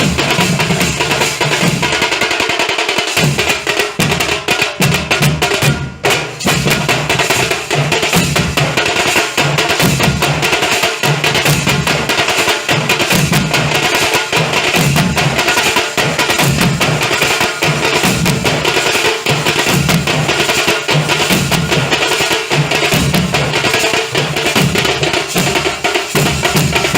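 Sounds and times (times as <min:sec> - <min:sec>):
fast drumming: 0:00.0 - 0:26.9.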